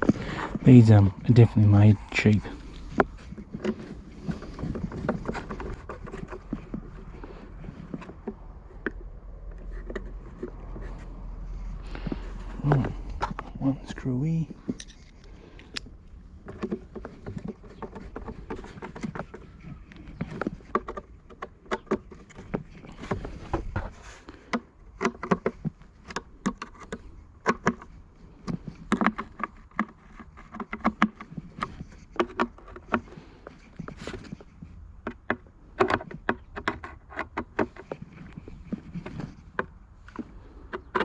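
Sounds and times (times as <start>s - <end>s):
screwdriver and plastic parts clicking: 14.6s - 41.0s.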